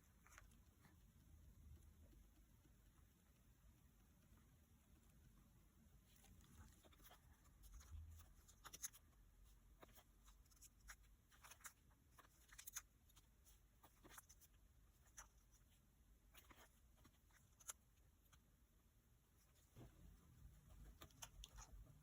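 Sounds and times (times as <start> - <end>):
paper rustling: 6.1 - 9.0.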